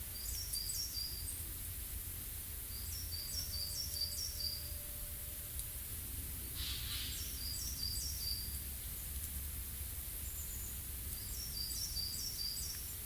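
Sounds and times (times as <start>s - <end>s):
small songbird singing: 0.0s - 1.4s, 2.7s - 4.8s, 6.4s - 9.0s, 10.2s - 13.0s.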